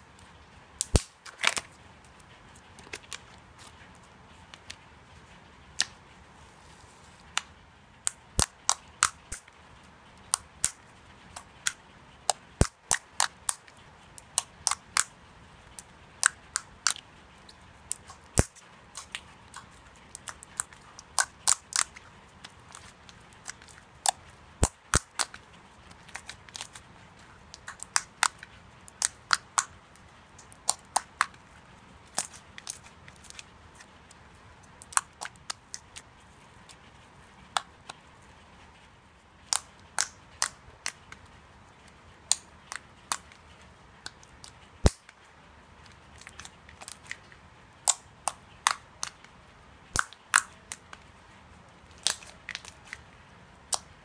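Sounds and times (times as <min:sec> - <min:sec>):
slime popping and clicking: 0:14.2 - 0:15.1, 0:30.6 - 0:31.4, 0:49.9 - 0:50.8.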